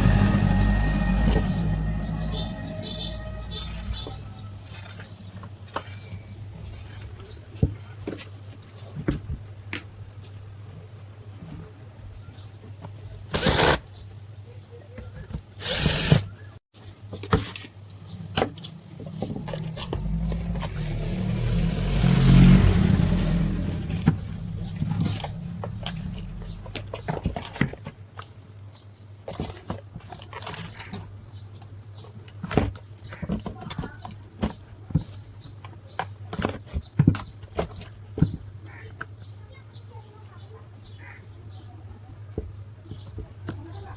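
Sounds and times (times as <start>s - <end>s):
steady low hum: 0.0s - 4.7s, 18.8s - 27.2s.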